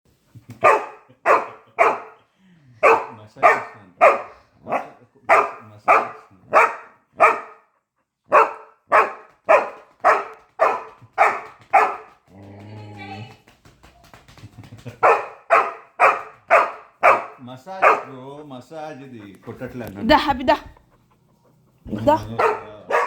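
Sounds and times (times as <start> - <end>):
dog barking: 0.6 - 2.2, 2.8 - 7.7, 8.3 - 12.2, 15.0 - 18.2, 21.9 - 23.0.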